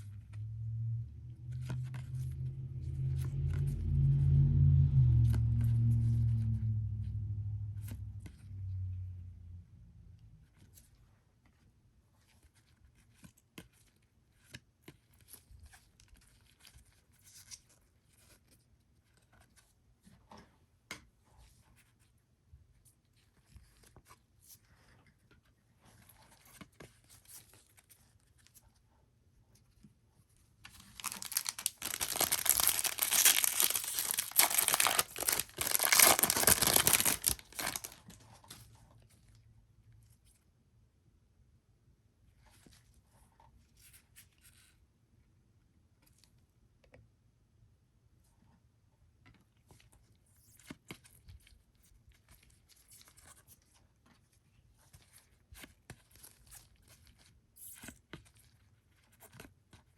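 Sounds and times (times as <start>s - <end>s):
foil wrapper tearing and crinkling: 30.7s - 38.2s.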